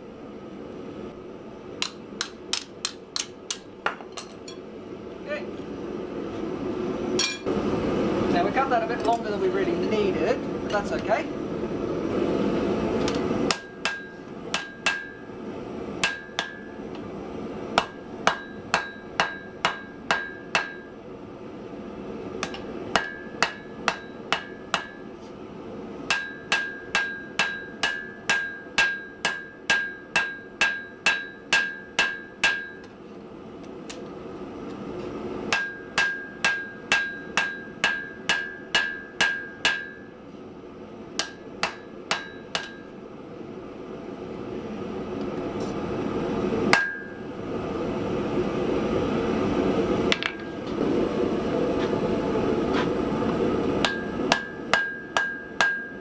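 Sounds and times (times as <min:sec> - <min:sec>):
hammer striking steel on anvil: 0:01.8 - 0:04.6, 0:07.2 - 0:07.5, 0:13.1 - 0:15.3, 0:16.0 - 0:17.0, 0:17.8 - 0:20.9, 0:22.4 - 0:25.1, 0:26.1 - 0:33.0, 0:35.5 - 0:40.1, 0:41.2 - 0:42.9, 0:46.7 - 0:47.2, 0:53.8 - 0:56.0.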